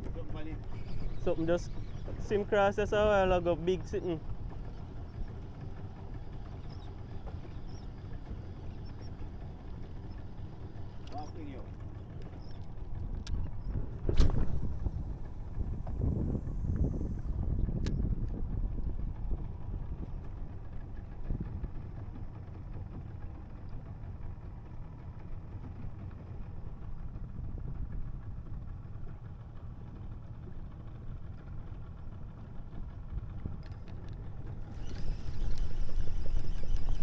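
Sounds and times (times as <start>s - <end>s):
boat engine rumbling: 0.0s - 17.9s, 33.2s - 37.0s.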